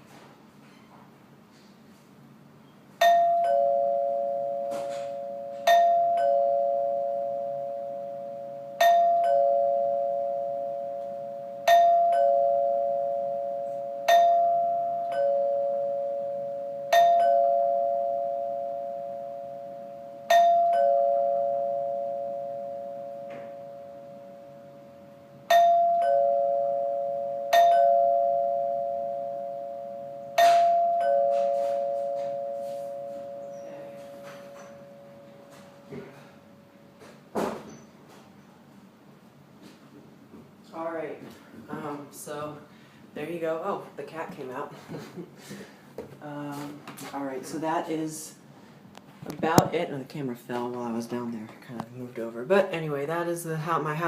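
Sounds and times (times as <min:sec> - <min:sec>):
two-note door chime: 0:03.0 - 0:36.0.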